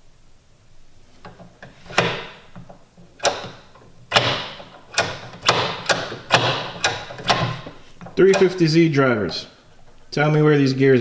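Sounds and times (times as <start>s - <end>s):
gear shifter clunking into gates: 1.3s - 9.5s.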